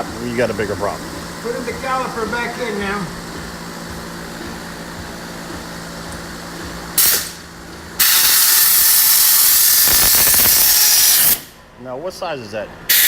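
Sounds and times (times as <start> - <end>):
steady low hum: 0.0 - 12.9
compressed air hissing: 6.9 - 11.6.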